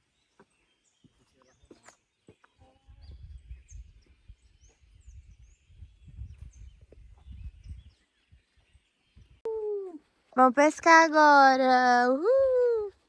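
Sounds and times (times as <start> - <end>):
wind rumble on microphone: 2.8 - 9.5.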